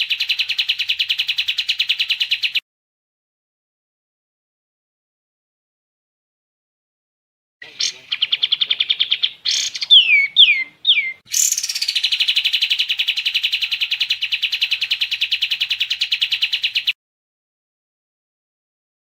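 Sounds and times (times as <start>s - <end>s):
songbird trilling and whistling: 0.0s - 2.6s, 7.6s - 17.0s.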